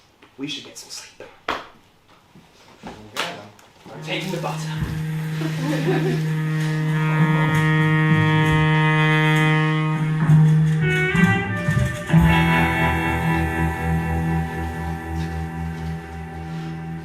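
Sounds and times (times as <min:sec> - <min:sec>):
sustained held chords: 0:03.9 - 0:17.0.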